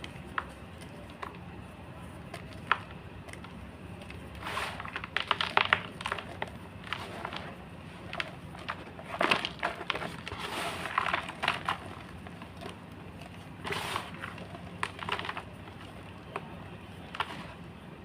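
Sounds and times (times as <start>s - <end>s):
chalk crunching: 0.0s - 17.8s.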